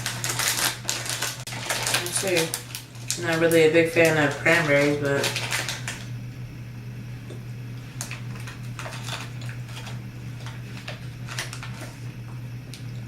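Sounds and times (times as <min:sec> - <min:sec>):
snack package crinkling: 0:00.0 - 0:06.1, 0:08.0 - 0:12.1
steady low hum: 0:00.0 - 0:13.0.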